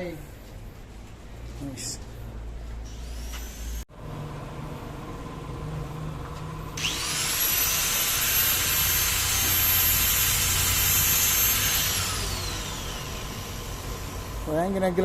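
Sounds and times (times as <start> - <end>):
electric grinder whining: 2.9 - 3.8, 6.8 - 14.6.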